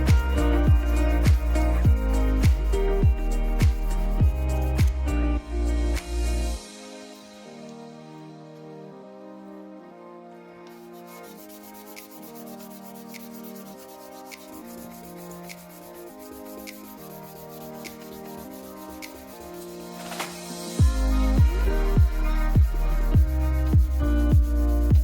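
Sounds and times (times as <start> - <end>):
sandpaper sanding: 0.0 - 5.0, 10.8 - 25.0
music of sustained chords: 0.0 - 25.0.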